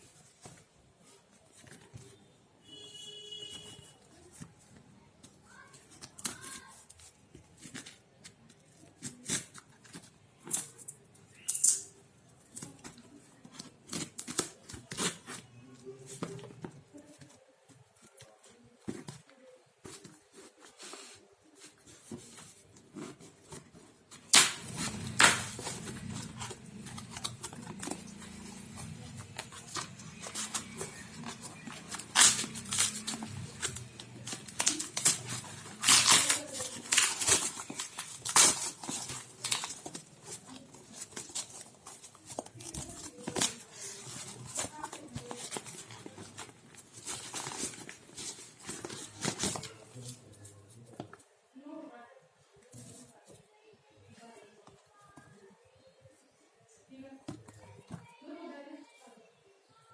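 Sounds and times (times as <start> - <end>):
packaging being handled and opened: 3.5 - 51.3.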